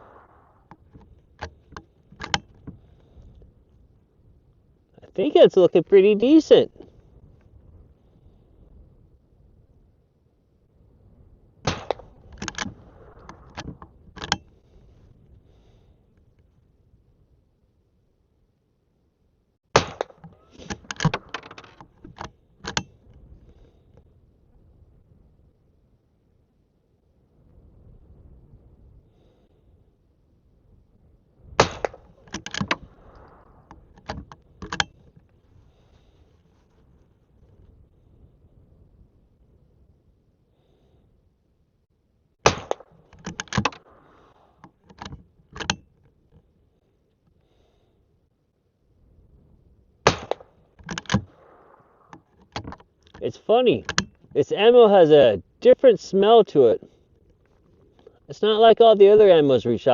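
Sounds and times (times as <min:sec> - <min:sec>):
rifle lever metallic clicks: 0:00.7 - 0:02.8, 0:11.7 - 0:14.5, 0:20.0 - 0:23.0, 0:31.6 - 0:35.1, 0:42.6 - 0:45.9, 0:50.2 - 0:53.2.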